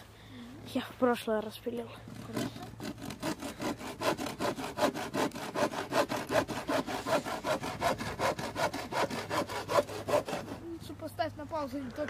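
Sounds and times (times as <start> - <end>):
hand saw cutting wood: 1.9 - 10.8.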